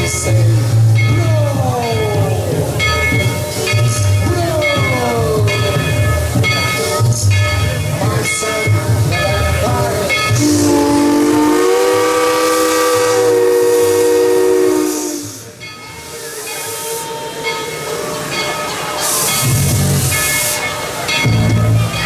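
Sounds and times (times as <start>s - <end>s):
hiss of steam: 0.0s - 22.0s
steam locomotive chime whistle: 0.0s - 22.0s.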